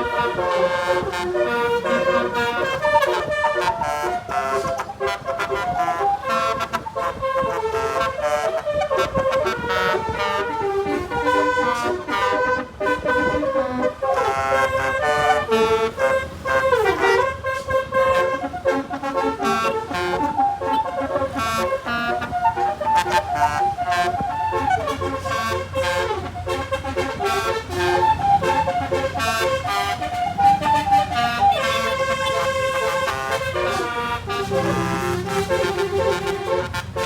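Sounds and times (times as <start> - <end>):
bus musical horn melody: 0.0 - 37.0.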